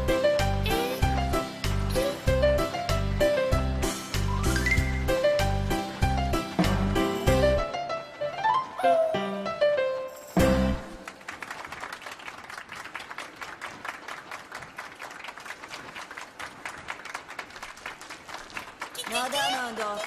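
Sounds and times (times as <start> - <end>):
crowd applauding: 10.8 - 20.0.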